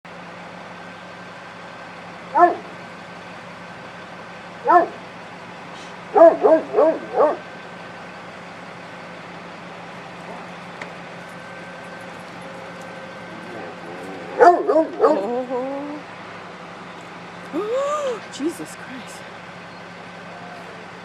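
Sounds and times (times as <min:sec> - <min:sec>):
dog barking: 0:02.4 - 0:02.7, 0:04.7 - 0:05.0, 0:06.1 - 0:07.4, 0:14.4 - 0:15.3.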